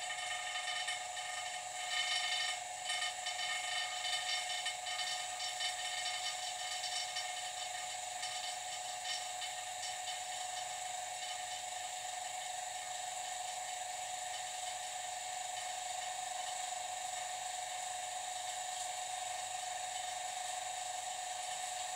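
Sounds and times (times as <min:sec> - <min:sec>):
vacuum pump droning: 0:00.0 - 0:21.9.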